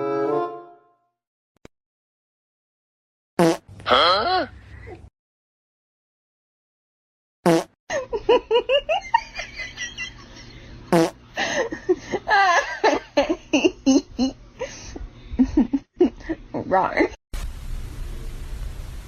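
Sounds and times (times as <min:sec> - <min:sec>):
fart-like noise: 0:03.4 - 0:03.8, 0:07.4 - 0:07.8, 0:10.9 - 0:11.2
people laughing: 0:07.9 - 0:10.7, 0:11.4 - 0:16.3.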